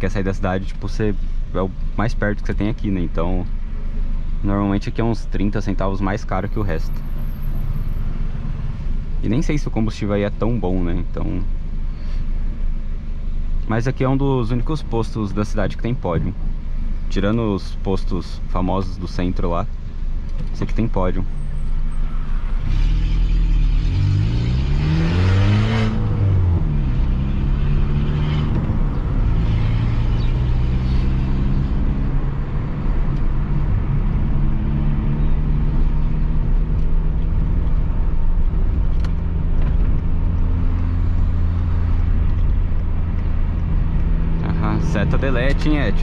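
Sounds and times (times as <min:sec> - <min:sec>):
car engine revving loud exhaust: 0:21.4 - 0:46.0.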